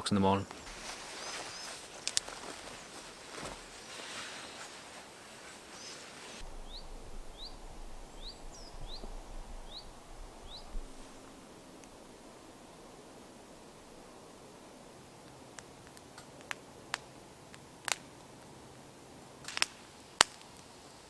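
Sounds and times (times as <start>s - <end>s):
woodland background noise: 0.0s - 21.0s
small bird rising chirp: 1.0s - 2.9s, 5.8s - 11.0s.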